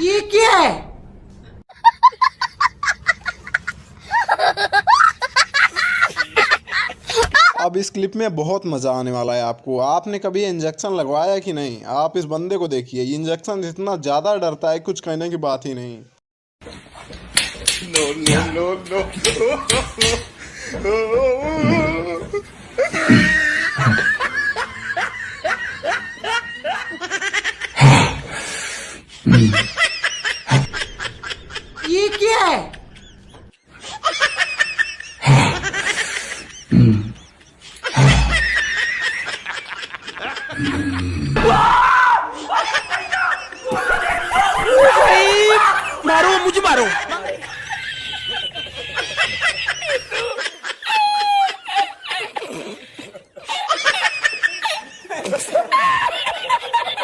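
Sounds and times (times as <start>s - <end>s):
person laughing: 1.8s - 7.6s, 19.2s - 27.8s, 29.3s - 41.4s, 42.4s - 57.0s
harsh outbursts: 40.5s - 47.6s.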